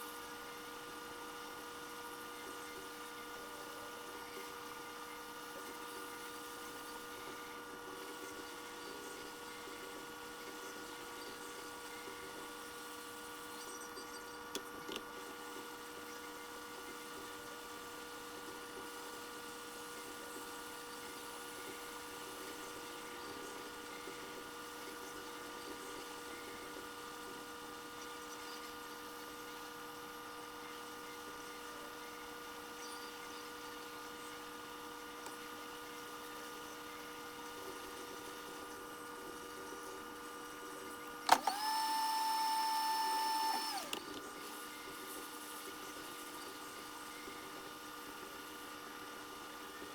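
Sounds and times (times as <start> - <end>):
electrical hum: 31.0 - 49.9.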